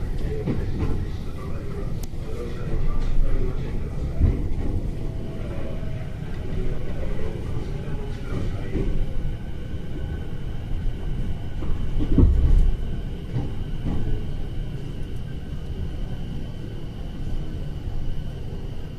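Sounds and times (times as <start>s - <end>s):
train rumbling on rails: 0.0s - 18.9s.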